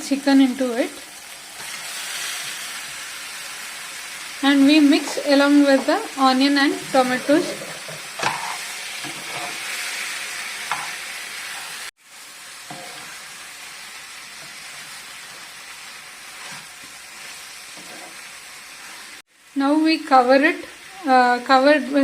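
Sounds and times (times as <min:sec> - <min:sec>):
chicken sizzling in a pan: 0:00.0 - 0:22.0.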